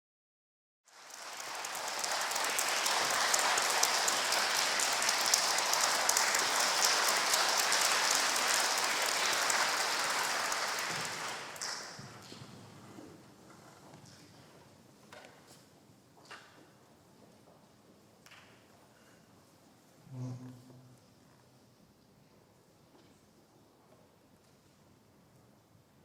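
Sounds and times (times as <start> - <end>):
audience applauding: 0.9 - 12.2.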